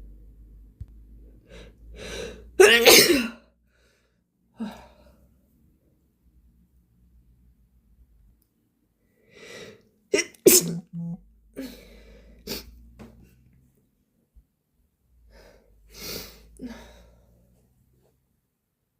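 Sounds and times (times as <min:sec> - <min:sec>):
heavy breathing: 0:01.4 - 0:02.6, 0:11.6 - 0:12.9
person sneezing: 0:02.6 - 0:03.4, 0:10.1 - 0:11.8
breathy inhale: 0:11.6 - 0:12.7.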